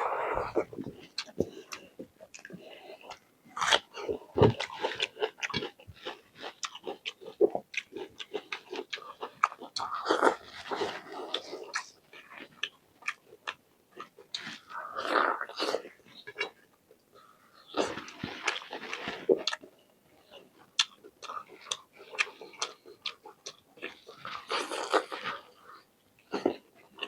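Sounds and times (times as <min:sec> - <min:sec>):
chewing with wet mouth clicks: 0:04.5 - 0:10.4, 0:17.6 - 0:25.3.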